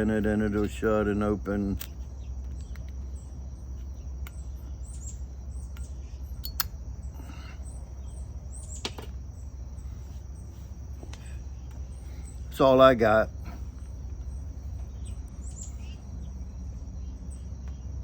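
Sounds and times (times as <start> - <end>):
bird chirping: 0.0 - 18.0
insect drone: 0.0 - 18.0
sharp clicks: 1.7 - 3.0, 5.7 - 6.8.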